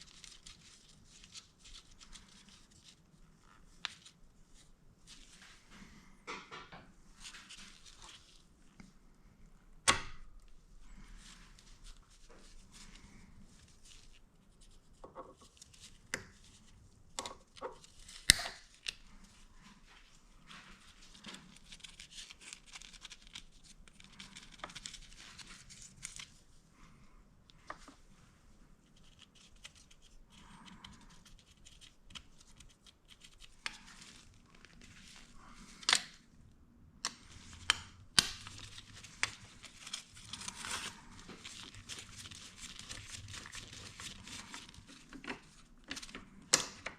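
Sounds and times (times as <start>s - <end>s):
rustling: 37.2s - 46.5s.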